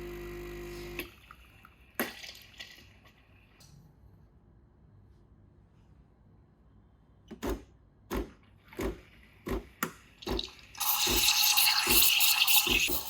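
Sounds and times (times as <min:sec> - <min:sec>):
water running into a sink: 0:10.2 - 0:13.0.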